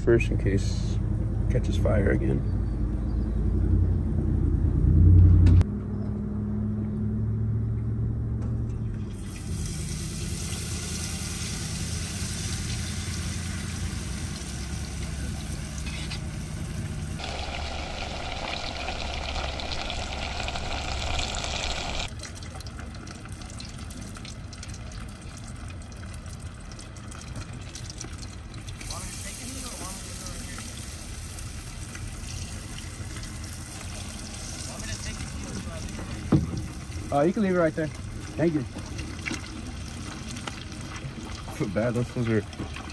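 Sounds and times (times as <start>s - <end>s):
fish sizzling in hot oil: 9.2s - 42.5s.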